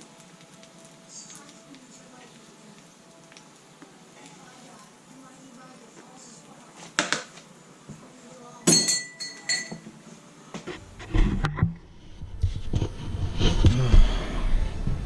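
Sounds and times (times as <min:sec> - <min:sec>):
glass clinking: 0:08.6 - 0:10.0
low rumbling shuffling noise: 0:10.8 - 0:15.0.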